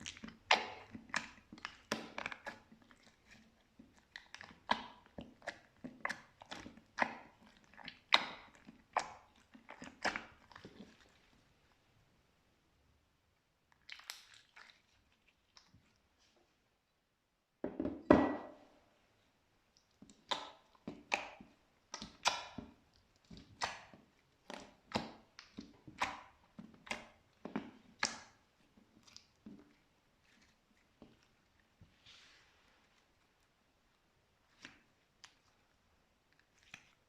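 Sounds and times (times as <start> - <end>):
slime squelching and crackling: 0.0 - 11.9, 13.6 - 16.2, 19.7 - 37.0.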